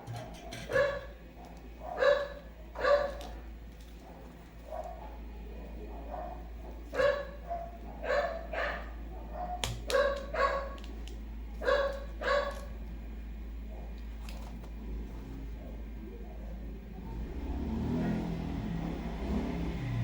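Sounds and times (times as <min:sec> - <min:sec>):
dog barking: 0:00.0 - 0:10.8, 0:11.6 - 0:12.8, 0:13.6 - 0:14.0.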